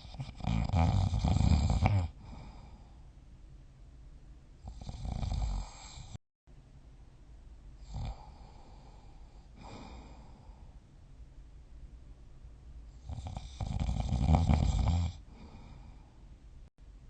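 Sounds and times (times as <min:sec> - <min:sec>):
person snoring: 0:00.0 - 0:02.9, 0:04.6 - 0:06.2, 0:07.8 - 0:10.7, 0:13.0 - 0:16.0.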